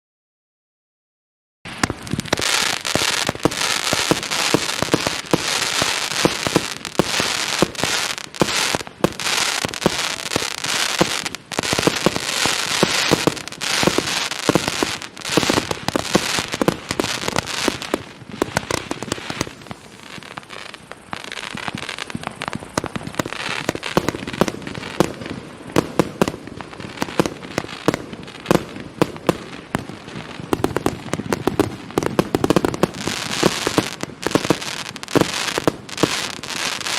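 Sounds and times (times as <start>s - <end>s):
firework battery pops and bangs: 1.7s - 36.9s.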